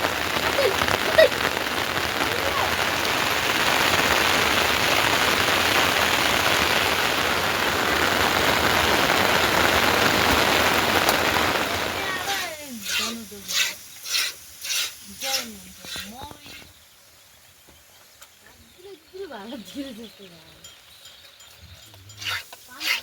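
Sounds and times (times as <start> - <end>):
heavy rain falling: 0.0 - 16.6.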